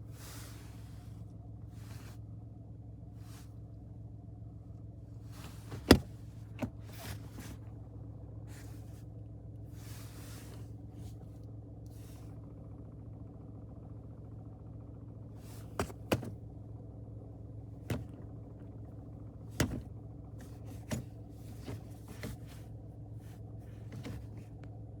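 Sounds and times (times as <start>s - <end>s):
car engine idling: 0.0s - 25.0s
sharp clicks and knocks: 15.8s - 16.4s.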